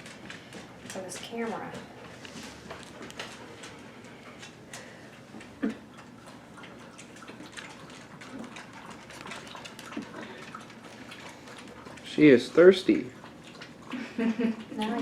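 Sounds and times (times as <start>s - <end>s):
puppy lapping water: 0.0s - 15.0s.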